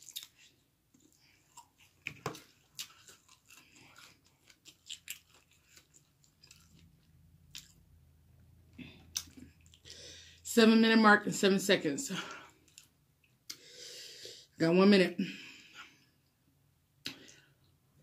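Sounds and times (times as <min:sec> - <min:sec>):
person chewing with crunches: 0:00.0 - 0:08.0, 0:08.6 - 0:10.0, 0:12.3 - 0:13.7.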